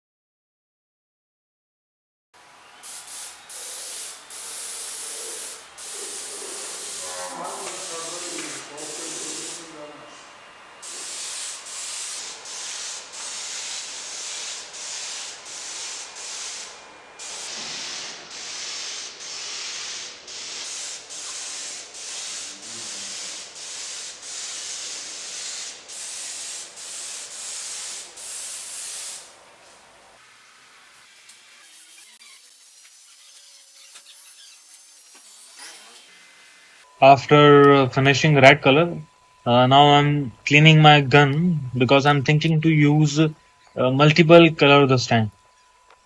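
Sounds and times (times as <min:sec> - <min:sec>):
paint spray gun hissing: 0:02.6 - 0:29.4, 0:30.2 - 0:36.9.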